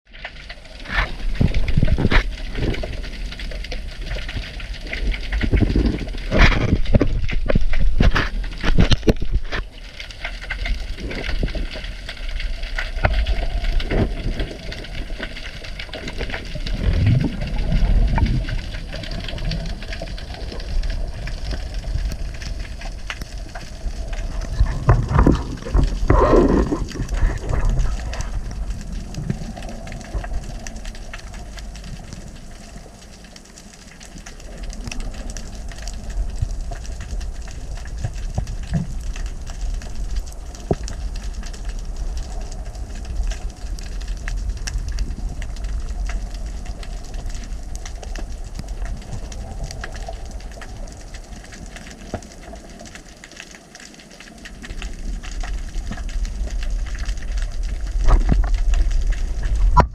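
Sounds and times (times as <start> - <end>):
underwater rumble of water: 0.1 - 59.9
bubbles gurgling: 0.3 - 9.9, 10.5 - 33.0, 54.3 - 59.9.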